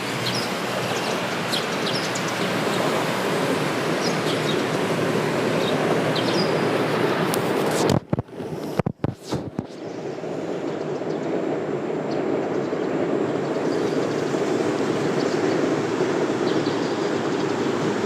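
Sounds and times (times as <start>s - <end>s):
outdoor background roar: 0.0s - 18.0s
bird chirps: 5.6s - 6.6s.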